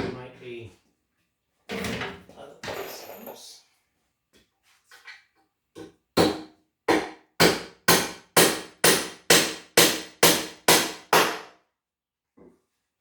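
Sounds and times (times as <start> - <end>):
hammer driving nail into wood: 6.2 - 11.5.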